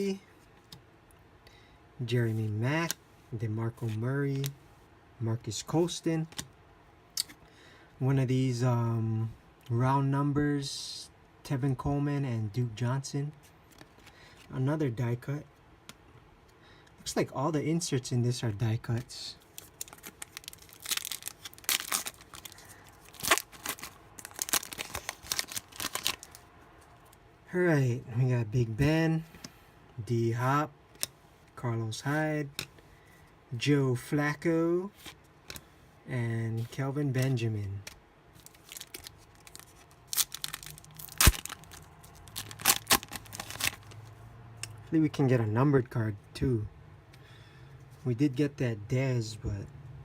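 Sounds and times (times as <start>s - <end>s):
card pack wrapper tearing: 19.5s - 26.4s, 37.8s - 44.0s.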